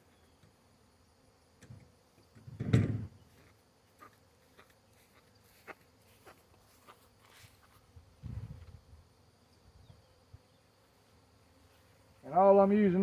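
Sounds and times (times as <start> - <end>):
loud thump: 2.6 - 3.1.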